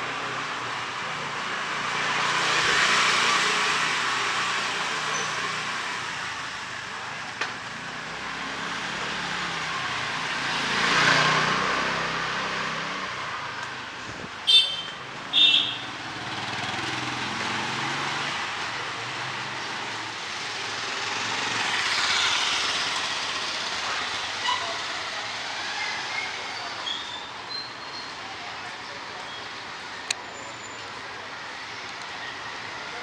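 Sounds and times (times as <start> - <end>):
tyres on wet pavement: 1.5 - 33.0
vehicle passing by: 8.4 - 13.1
vehicle horn beeping: 14.5 - 15.9.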